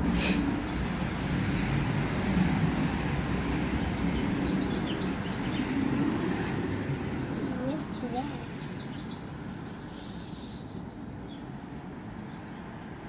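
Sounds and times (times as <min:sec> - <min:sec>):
faint bird chirps: 0:08.6 - 0:11.5.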